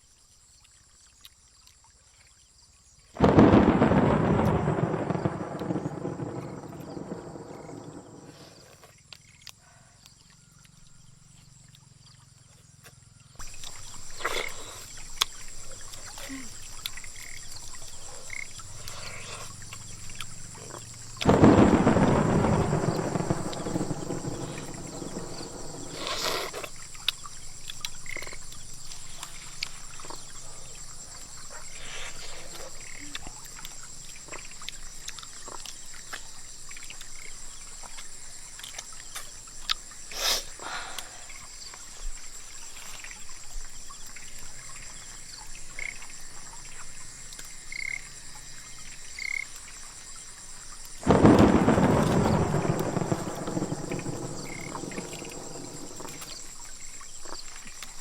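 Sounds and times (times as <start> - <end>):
frogs croaking: 0.0 - 58.0
thunderclap rumbling: 3.2 - 8.7, 20.0 - 32.0, 51.0 - 56.7
steady rain: 3.2 - 8.8, 13.4 - 43.8, 44.4 - 58.0.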